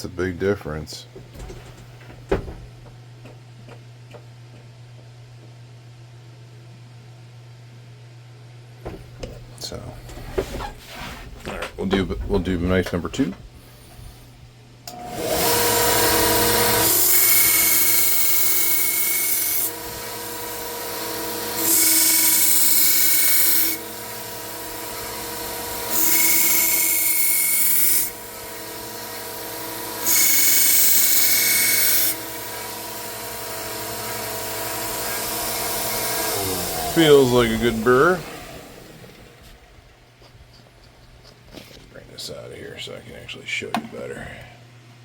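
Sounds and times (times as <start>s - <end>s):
belt sander motor hum: 14.9s - 39.5s
knife grinding on sanding belt: 21.5s - 23.8s, 25.7s - 28.2s, 30.0s - 32.7s.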